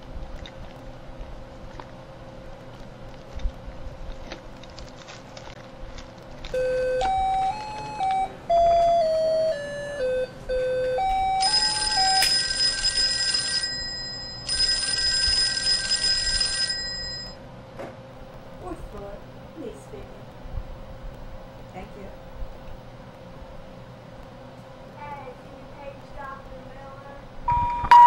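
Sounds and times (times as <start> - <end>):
low room hum: 0.0 - 28.0
harsh buzzing electronic ring: 8.5 - 17.4.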